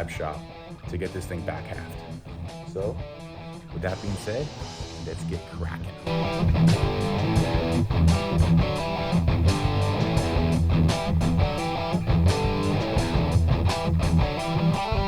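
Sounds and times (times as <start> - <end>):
guitar rock music: 0.0 - 15.0.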